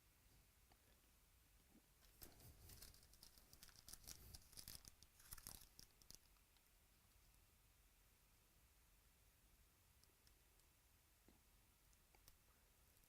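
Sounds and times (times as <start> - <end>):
card packs crinkling and rustling: 2.0 - 6.2.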